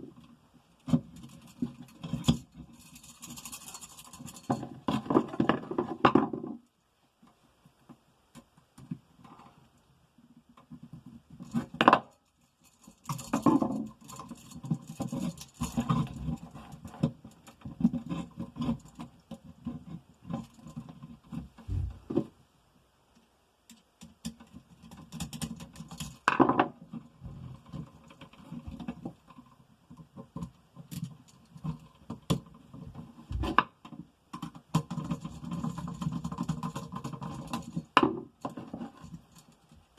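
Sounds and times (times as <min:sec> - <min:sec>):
hands and tools handling wiring: 0:10.5 - 0:22.3, 0:23.7 - 0:39.9.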